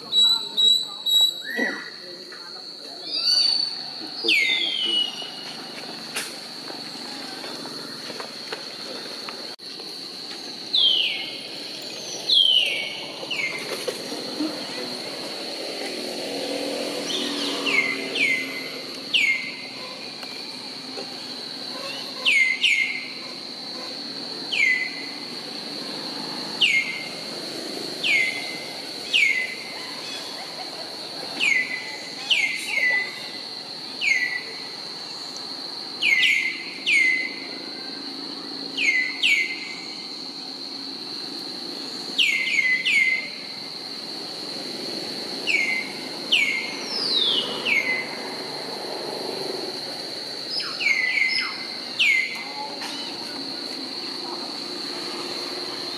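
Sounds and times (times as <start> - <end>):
high-pitched insect drone: 0.0 - 55.9
bird whistling: 3.0 - 5.3, 12.1 - 13.6, 19.1 - 19.6, 24.5 - 25.0, 28.0 - 28.4, 42.2 - 43.3.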